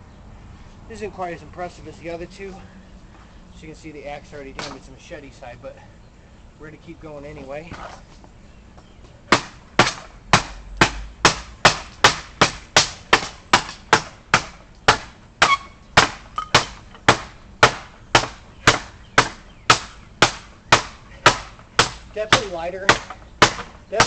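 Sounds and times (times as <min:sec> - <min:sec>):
machete chopping wood: 0:04.6 - 0:04.8, 0:09.3 - 0:24.0.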